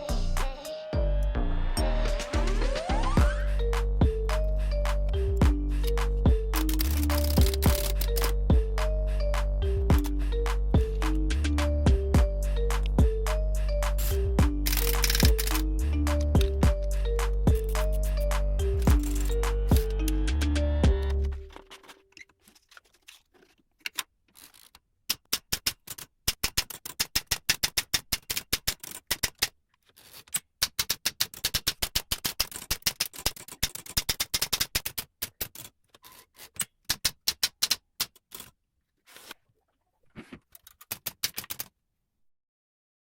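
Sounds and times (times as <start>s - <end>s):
typewriter keys clacking: 6.5s - 8.6s, 13.8s - 20.2s, 30.1s - 38.5s, 40.5s - 41.7s.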